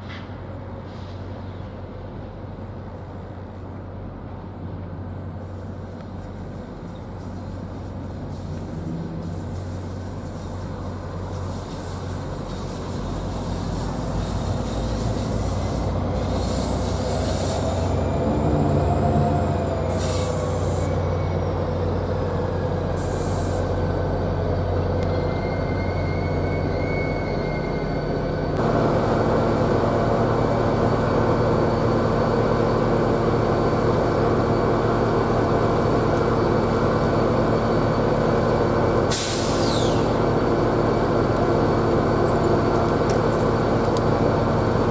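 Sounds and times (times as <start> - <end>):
diesel train engine running: 0.0 - 44.9
train wheel squeal: 5.3 - 28.6, 31.6 - 40.9, 41.7 - 43.6.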